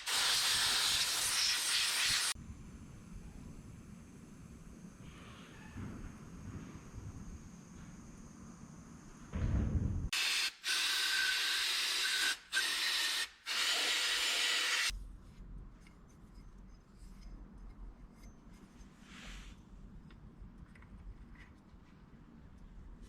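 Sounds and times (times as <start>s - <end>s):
pressurized spray hissing: 0.0s - 2.4s.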